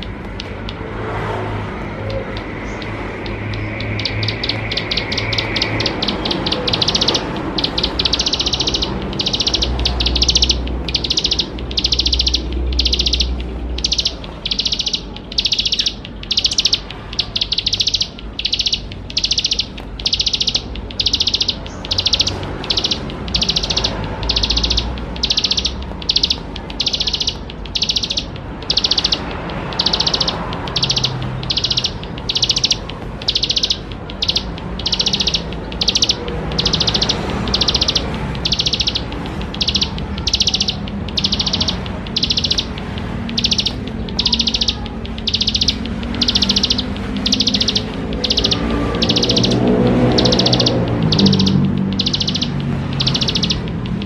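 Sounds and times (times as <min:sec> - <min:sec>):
bird singing buzzy notes: 0:00.0 - 0:54.0.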